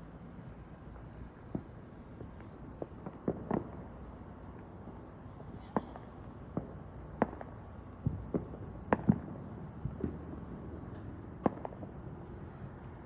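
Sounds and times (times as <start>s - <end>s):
fireworks bangs and pops: 1.4s - 5.1s, 5.7s - 12.3s.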